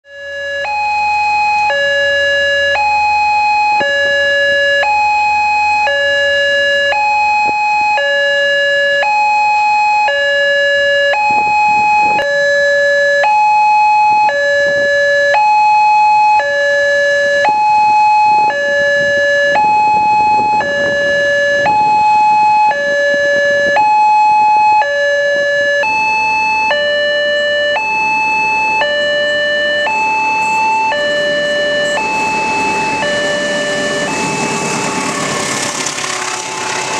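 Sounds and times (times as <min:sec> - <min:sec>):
two-tone crossing warning siren: 0:00.0 - 0:36.9.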